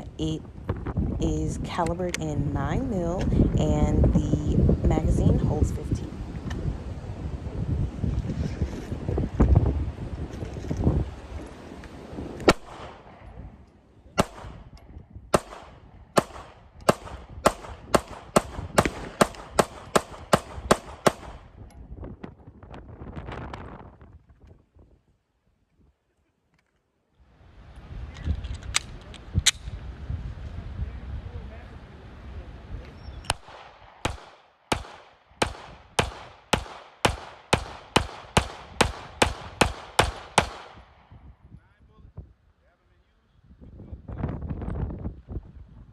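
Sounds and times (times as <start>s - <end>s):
pistol shots: 12.5s - 13.2s, 14.2s - 14.7s, 15.3s - 21.5s, 33.3s - 41.0s.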